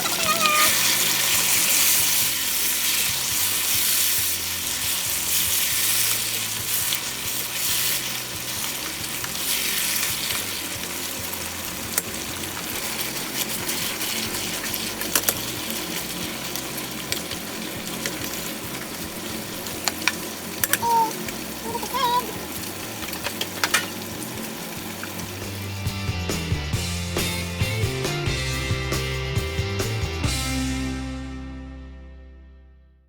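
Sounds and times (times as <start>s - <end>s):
food sizzling in a frying pan: 0.0s - 26.9s
utensil clicking against pan: 0.8s - 19.0s, 19.6s - 21.4s, 22.9s - 24.4s.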